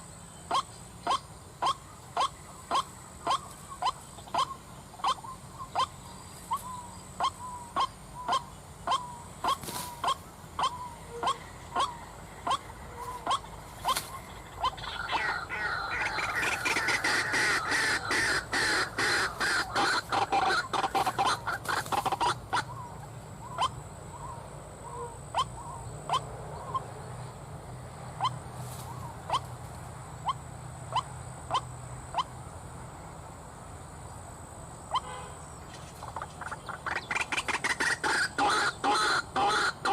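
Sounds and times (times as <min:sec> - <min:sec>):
bird croaking calls: 0:00.0 - 0:27.3, 0:28.1 - 0:32.4, 0:34.8 - 0:39.9
harsh dense bird chorus: 0:00.0 - 0:39.9.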